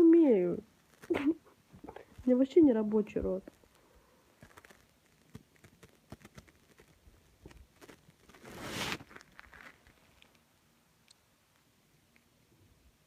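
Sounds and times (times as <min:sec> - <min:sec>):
rustling: 0:00.0 - 0:12.2
faint clicks: 0:11.0 - 0:12.3.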